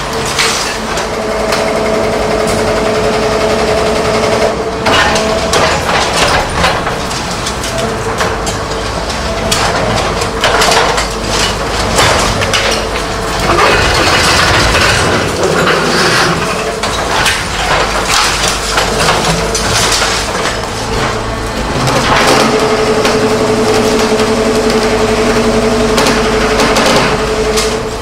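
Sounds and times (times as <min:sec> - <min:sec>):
machine power unit humming: 0:00.0 - 0:28.0
concrete cracking and crunching: 0:04.8 - 0:24.7.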